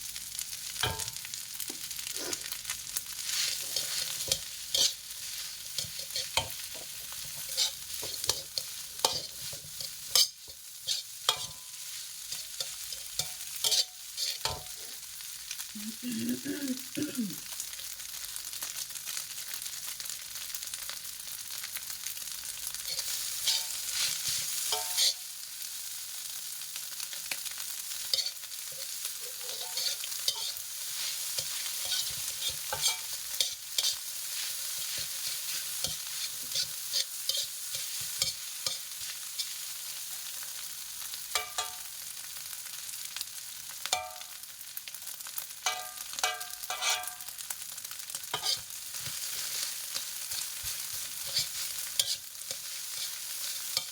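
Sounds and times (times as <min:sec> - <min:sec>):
fried rice sizzling in a pan: 0:00.0 - 0:53.9
spatula scraping and clinking pan: 0:00.8 - 0:01.2, 0:03.2 - 0:15.0, 0:22.8 - 0:25.3, 0:28.0 - 0:40.4, 0:41.3 - 0:41.9, 0:43.9 - 0:44.4, 0:45.6 - 0:47.4, 0:48.1 - 0:53.9.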